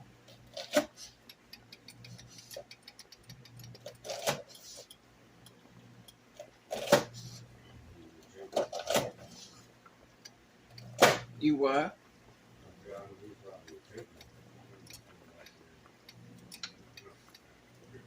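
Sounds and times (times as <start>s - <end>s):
low steady hum: 0.0s - 18.0s
utensils clicking: 0.3s - 6.9s, 13.7s - 18.0s.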